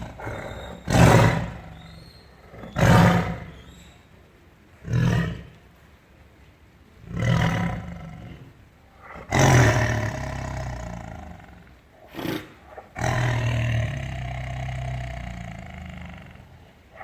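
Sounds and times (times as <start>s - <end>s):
tiger roaring: 0.0s - 3.6s, 4.8s - 5.6s, 7.0s - 17.0s.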